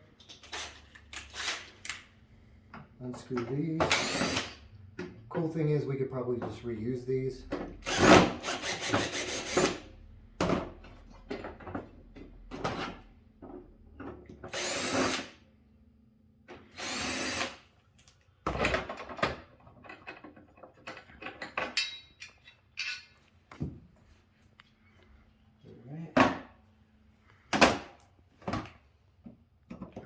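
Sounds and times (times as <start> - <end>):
cordless drill whirring: 3.9 - 4.6, 14.5 - 15.3, 16.7 - 17.6.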